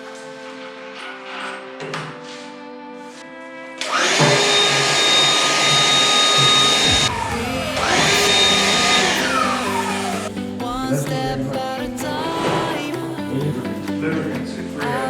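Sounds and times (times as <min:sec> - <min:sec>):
vacuum cleaner motor whining: 0:03.8 - 0:10.3.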